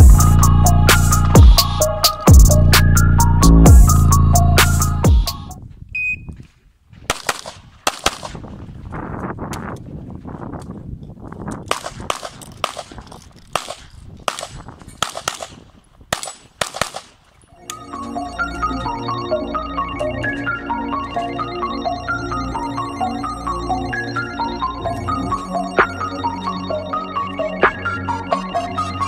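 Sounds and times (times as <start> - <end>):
short electronic beep: 6.0 - 6.4
handgun shots: 7.1 - 8.4, 11.7 - 17.2.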